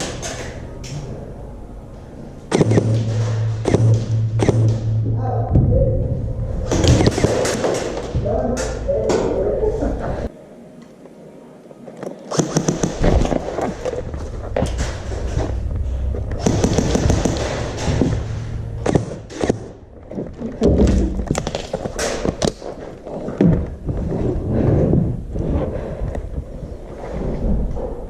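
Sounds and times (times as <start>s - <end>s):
airsoft guns firing: 2.5s - 5.0s, 6.7s - 8.1s, 12.3s - 13.5s, 16.4s - 17.8s
microphone handling rumble: 13.0s - 18.8s.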